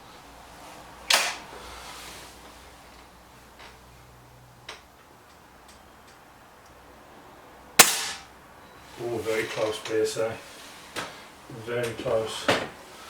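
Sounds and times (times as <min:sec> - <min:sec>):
air rifle shot: 0:07.8 - 0:08.3.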